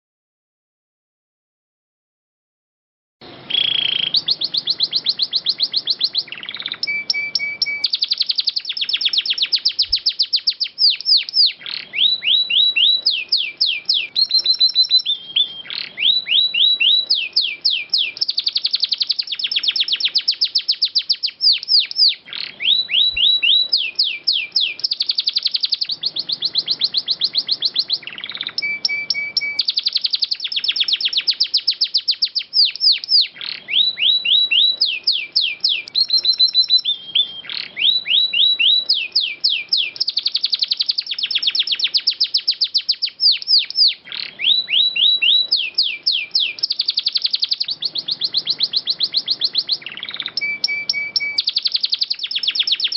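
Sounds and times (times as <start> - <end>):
canary singing trills: 3.2 - 52.9.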